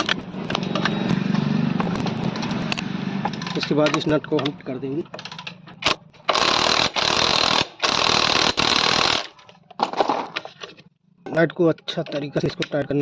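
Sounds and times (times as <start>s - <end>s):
impact wrench hammering: 5.8s - 9.4s.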